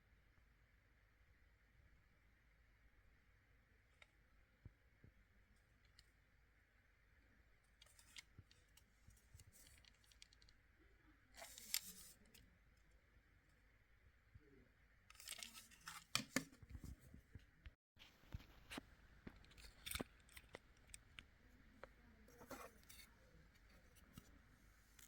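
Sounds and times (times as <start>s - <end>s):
handling clicks and rustles: 11.4s - 12.4s, 18.0s - 25.0s.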